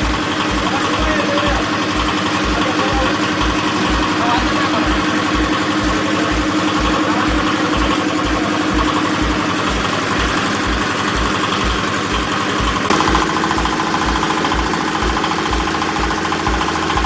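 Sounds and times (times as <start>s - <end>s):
diesel engine thudding: 0.0s - 17.0s.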